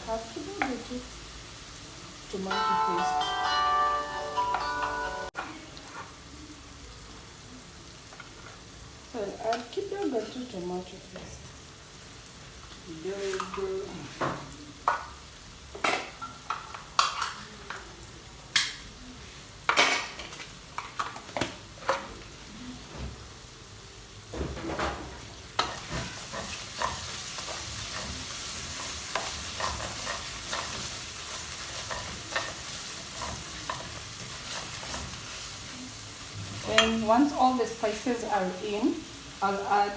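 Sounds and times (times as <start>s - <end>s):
spices sizzling in oil: 0.0s - 39.9s
spoon stirring and scraping in pan: 12.6s - 17.9s, 25.1s - 37.1s.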